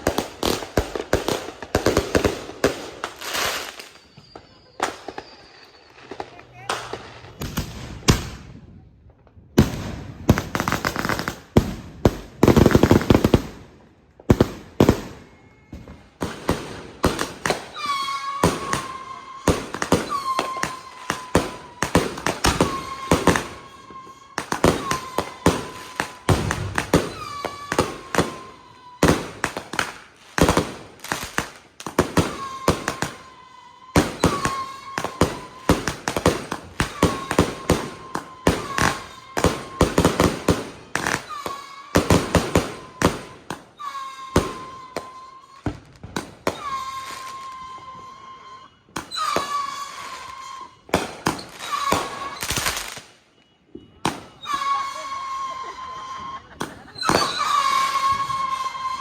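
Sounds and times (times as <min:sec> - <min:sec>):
fireworks bangs: 0:00.0 - 0:59.0
fireworks crackling: 0:00.0 - 0:59.0
high whistling tone: 0:03.0 - 0:07.4, 0:17.2 - 0:29.8, 0:32.2 - 0:59.0.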